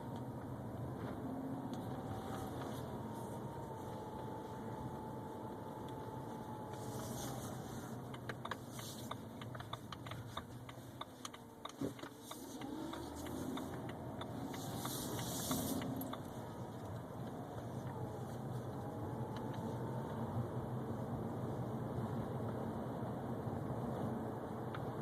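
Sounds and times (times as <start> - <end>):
car running hum: 0.0 - 25.0
light clicks and rattles: 1.7 - 20.2.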